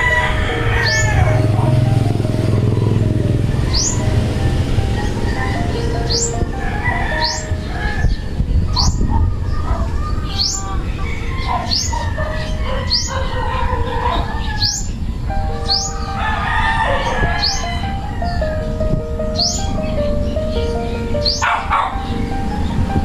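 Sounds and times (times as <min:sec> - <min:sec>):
background music: 0:00.0 - 0:23.0
small bird high call: 0:07.2 - 0:16.2.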